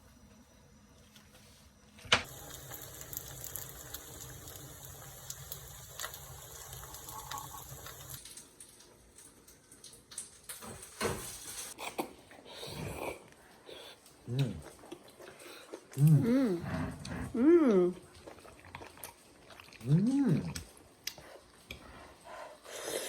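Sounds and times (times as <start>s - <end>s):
water running from a tap: 2.2s - 8.3s.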